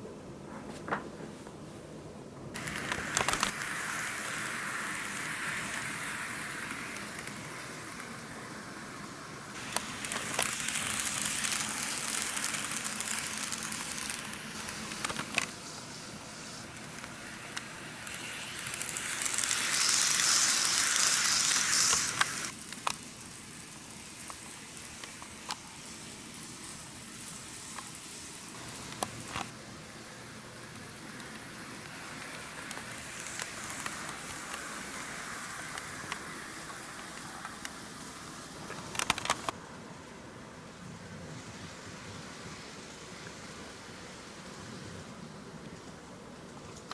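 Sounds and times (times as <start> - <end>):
sharp clicks: 2.6 - 4.0, 16.8 - 23.0, 38.7 - 39.6
model train wheels rattling: 2.6 - 39.6.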